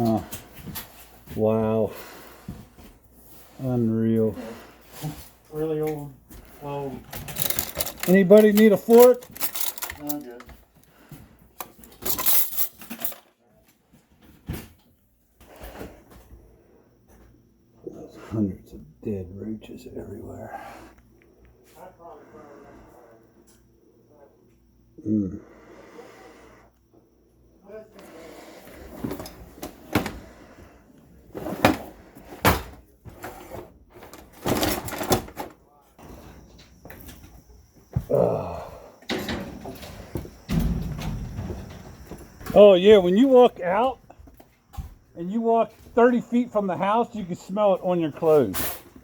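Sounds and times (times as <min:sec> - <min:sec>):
debris clinking and crunching: 0:07.1 - 0:10.5.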